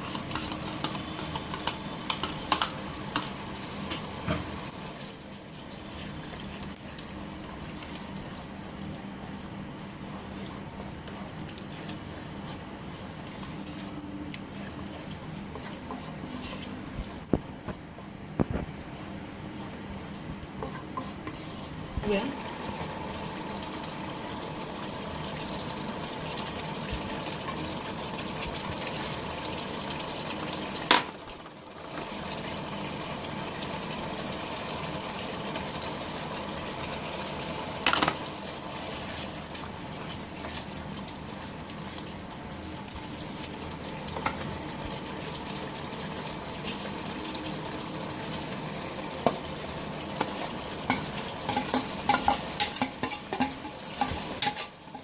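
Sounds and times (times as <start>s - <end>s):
food sizzling in a pot: 0.0s - 8.5s, 20.7s - 55.0s
utensil clattering against pot: 50.9s - 55.0s.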